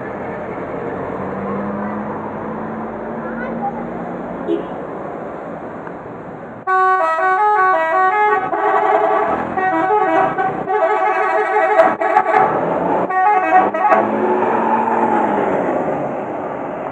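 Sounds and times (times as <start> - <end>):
bus running noise: 0.0 - 16.9
musical air horn melody: 6.7 - 14.1.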